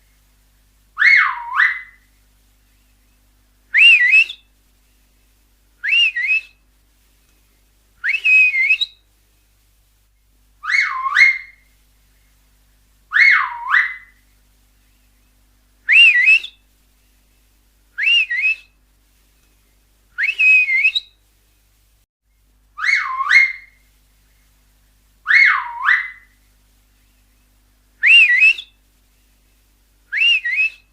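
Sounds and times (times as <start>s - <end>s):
finger whistle: 3.8s - 4.4s, 5.8s - 6.6s, 8.0s - 9.0s, 15.9s - 16.6s, 18.0s - 18.7s, 20.2s - 21.1s, 28.0s - 28.7s, 30.1s - 30.9s.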